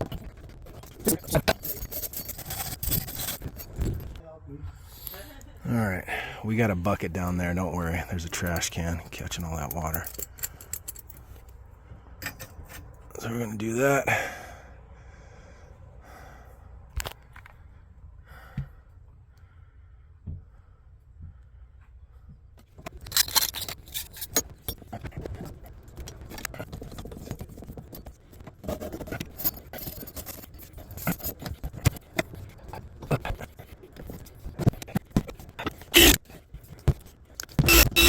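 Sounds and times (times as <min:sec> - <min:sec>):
scraping and rustling of tools: 0:00.0 - 0:04.2, 0:06.9 - 0:13.3, 0:22.6 - 0:38.0.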